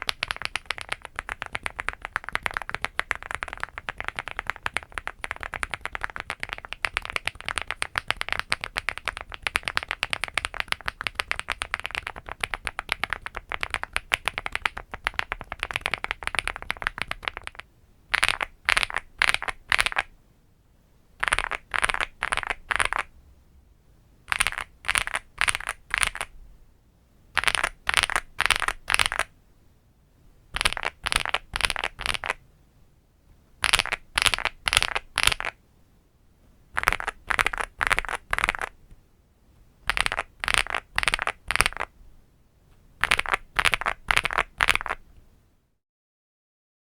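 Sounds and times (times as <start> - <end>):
mechanical keyboard typing: 0.0 - 20.1, 21.2 - 23.1, 24.3 - 26.3, 30.6 - 32.4, 36.8 - 38.7, 39.9 - 41.9.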